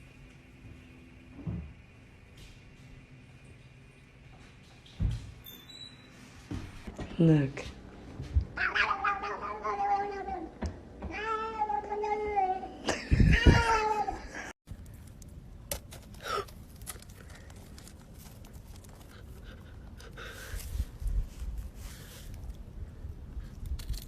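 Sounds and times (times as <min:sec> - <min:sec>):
cat yowling: 0:08.6 - 0:12.7.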